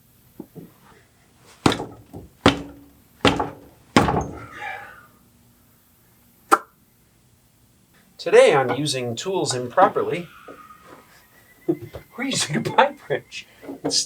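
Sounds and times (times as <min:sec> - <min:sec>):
sharp knock: 0:01.6 - 0:04.5
metal-on-metal blows: 0:01.6 - 0:04.8.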